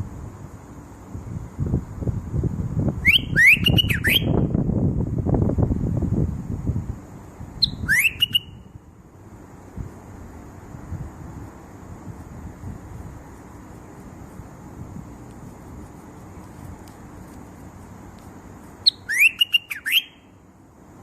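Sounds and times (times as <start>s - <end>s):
wind rumble on microphone: 0.0s - 19.0s
bird whistling calls: 3.0s - 4.5s, 7.6s - 8.7s, 18.8s - 20.3s.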